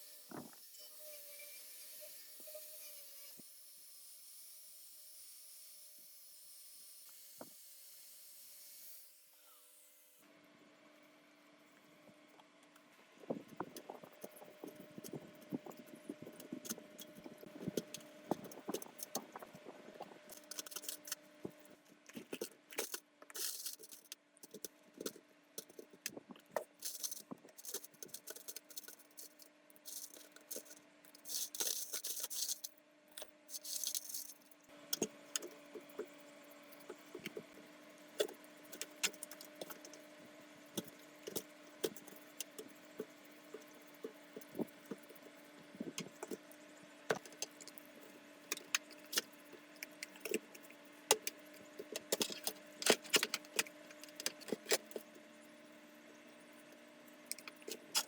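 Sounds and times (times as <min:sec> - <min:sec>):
metal parts clicking and clinking: 0:22.1 - 0:26.2.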